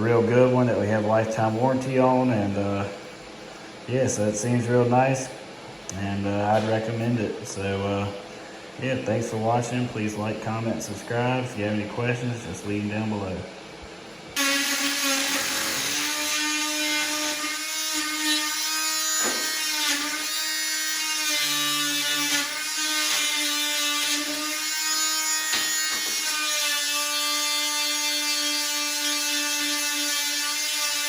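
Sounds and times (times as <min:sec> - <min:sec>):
oscillating multi-tool buzzing: 0:14.4 - 0:31.0.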